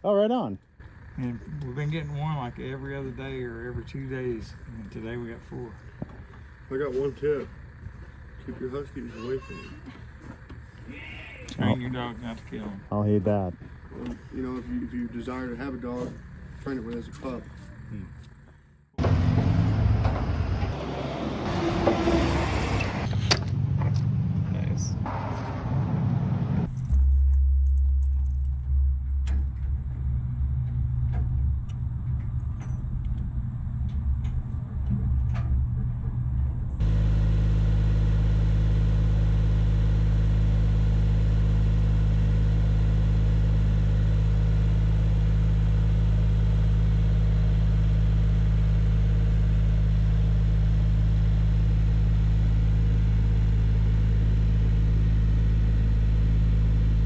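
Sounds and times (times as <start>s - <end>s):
vehicle engine rumbling: 0.0s - 57.0s.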